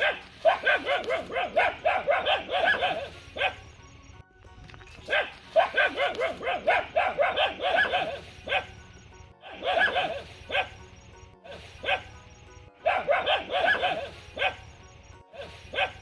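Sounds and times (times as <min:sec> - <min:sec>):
dog barking: 0:00.0 - 0:03.7, 0:05.1 - 0:08.8, 0:09.4 - 0:10.8, 0:11.5 - 0:12.1, 0:12.8 - 0:14.8, 0:15.4 - 0:16.0.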